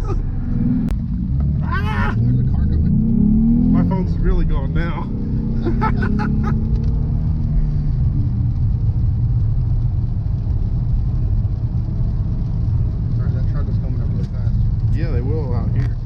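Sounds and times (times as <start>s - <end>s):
car engine drone: 0.0s - 16.0s
road noise: 0.0s - 16.0s.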